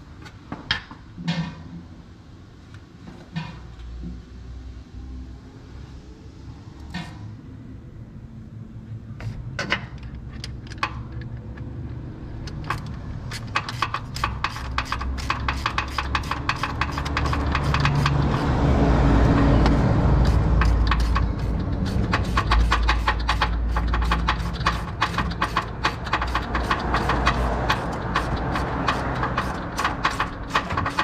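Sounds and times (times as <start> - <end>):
metallic clicking of hand tools: 12.4 - 18.5, 19.6 - 31.0.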